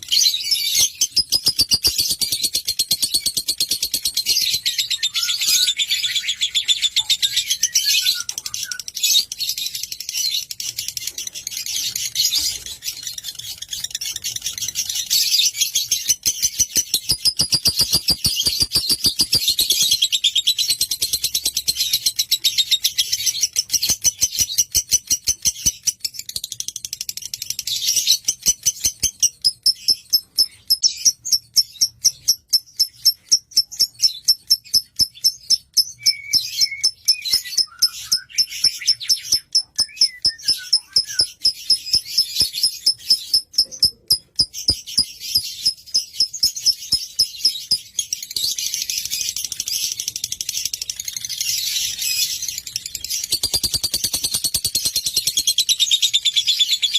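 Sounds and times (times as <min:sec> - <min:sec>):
lovebird chattering song: 0:00.0 - 0:56.9.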